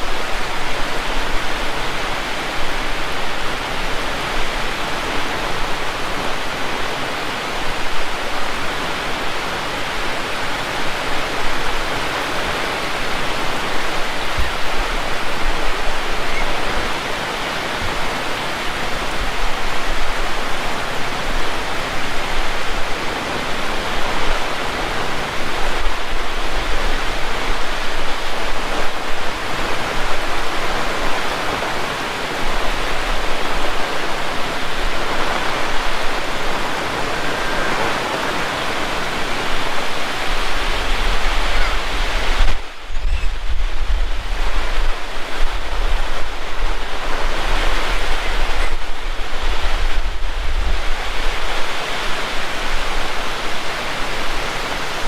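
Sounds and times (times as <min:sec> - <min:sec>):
heavy rain in strong wind: 0:00.0 - 0:55.0
wind buffeting microphone: 0:00.0 - 0:55.0.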